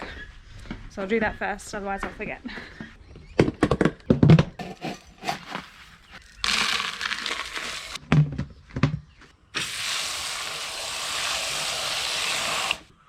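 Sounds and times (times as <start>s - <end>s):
feed pouring: 4.6s - 8.0s.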